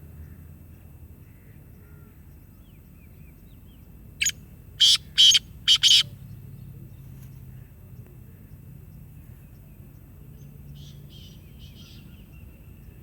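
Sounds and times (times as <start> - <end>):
parrot screeching: 4.8 - 6.0.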